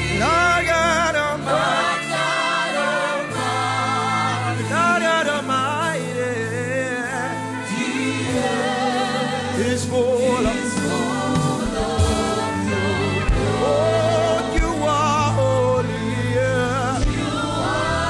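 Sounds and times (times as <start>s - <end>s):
keyboard and bass chords: 0.0s - 18.0s
voices singing gospel: 0.0s - 18.0s.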